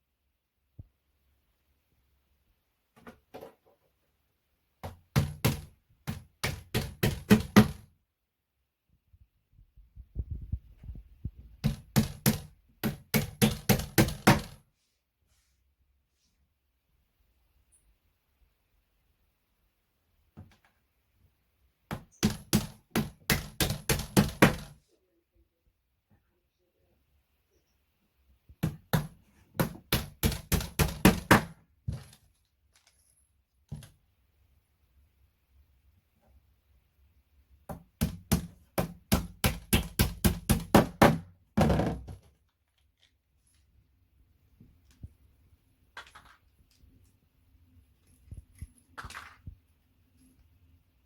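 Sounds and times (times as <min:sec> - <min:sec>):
sharp knocks on furniture parts: 0:04.8 - 0:07.9, 0:11.6 - 0:14.6, 0:21.9 - 0:24.8, 0:28.6 - 0:32.2, 0:37.7 - 0:42.3.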